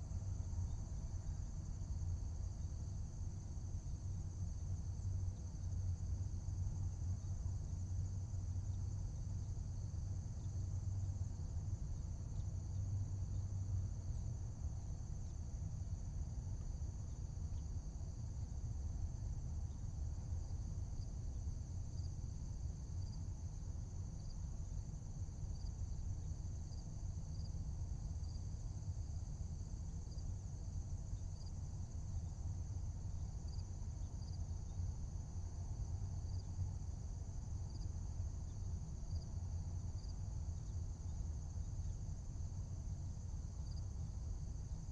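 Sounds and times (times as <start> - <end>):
insect chirps: 0.1 - 44.9
crickets trilling: 36.0 - 44.8.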